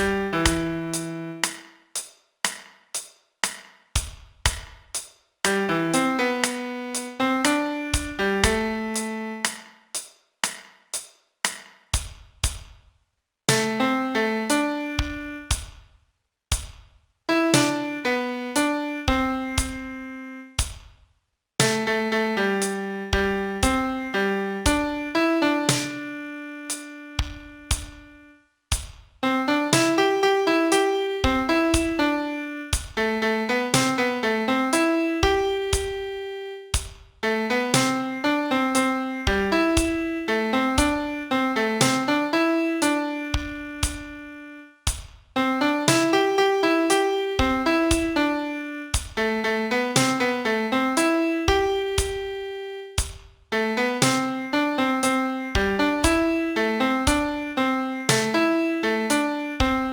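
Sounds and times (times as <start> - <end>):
solo piano melody: 0.0 - 1.5, 5.5 - 9.6, 13.6 - 15.5, 17.3 - 20.6, 21.6 - 28.3, 29.2 - 44.8, 45.4 - 59.9.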